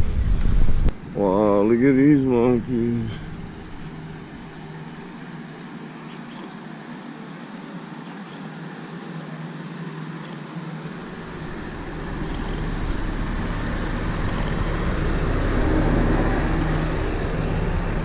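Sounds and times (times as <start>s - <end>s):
deep rumble: 0.0s - 5.1s, 11.0s - 18.0s
vehicle engine humming: 0.0s - 18.0s.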